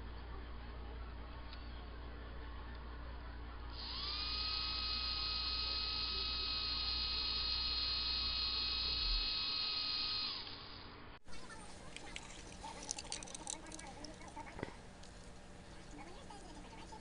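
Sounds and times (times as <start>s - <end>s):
low electrical hum: 0.0s - 17.0s
electric motor whining: 3.8s - 10.8s.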